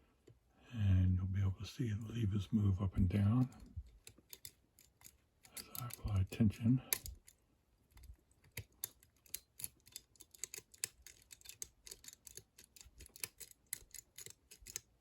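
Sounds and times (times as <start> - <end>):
metallic clicks of lock picking: 3.4 - 15.0.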